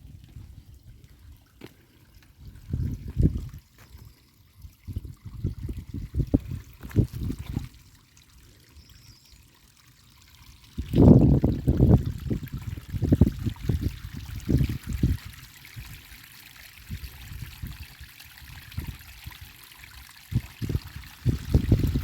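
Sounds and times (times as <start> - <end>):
rainwater running in channel: 0.0 - 22.0.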